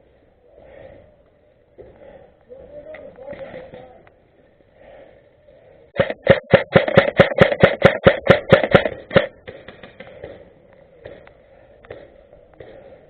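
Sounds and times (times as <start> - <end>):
airsoft gun shots: 6.0 - 11.2.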